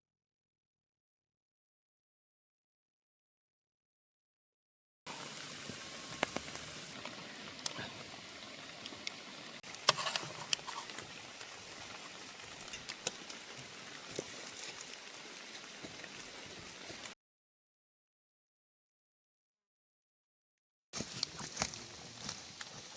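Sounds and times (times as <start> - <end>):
raindrops ticking close by: 5.1 - 17.2
steady rain: 5.1 - 17.2.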